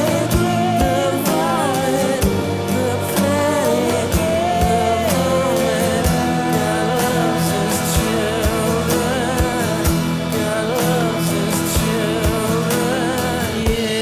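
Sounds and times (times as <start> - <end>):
drum beat: 0.0 - 12.9
wavering lead melody: 0.0 - 13.1.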